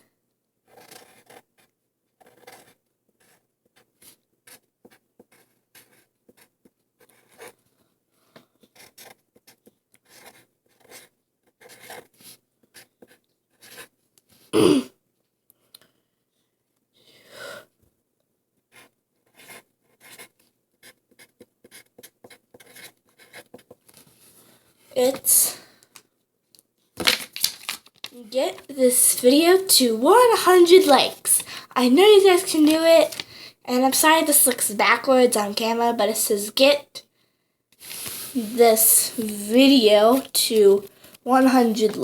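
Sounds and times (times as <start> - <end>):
pen scratching on paper: 0.7 - 7.6, 8.6 - 13.9, 18.7 - 23.8.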